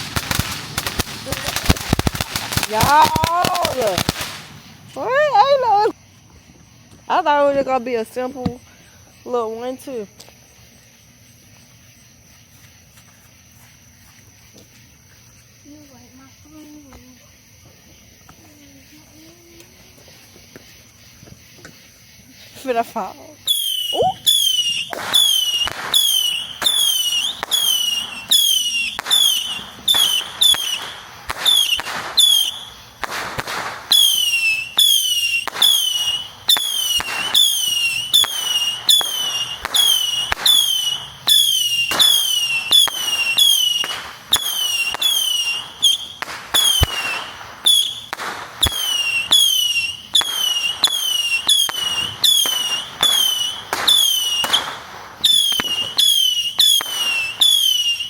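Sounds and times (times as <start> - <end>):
firework pops and crackling: 0.0 - 6.0, 23.5 - 58.0
whistling firework shots: 0.0 - 6.0, 23.4 - 58.0.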